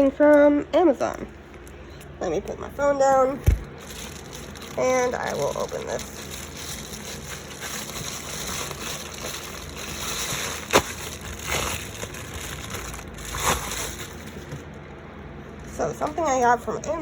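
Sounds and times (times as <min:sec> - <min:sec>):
packaging rustling and tearing: 0:03.5 - 0:14.8
loud ripping of packaging: 0:03.7 - 0:14.7.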